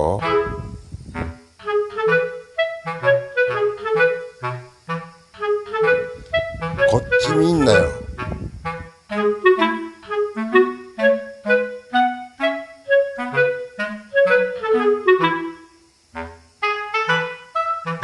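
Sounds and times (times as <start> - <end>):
light melody over bass line: 0.0 - 4.8, 5.4 - 11.8.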